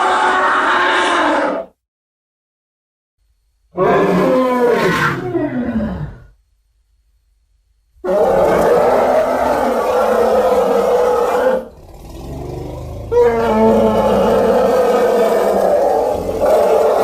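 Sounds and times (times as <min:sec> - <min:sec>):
dinosaur roar: 0:03.8 - 0:06.4, 0:08.0 - 0:17.0.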